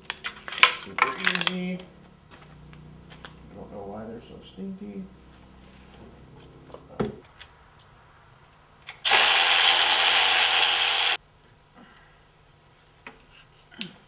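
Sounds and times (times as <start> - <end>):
power tool running: 9.0 - 11.2.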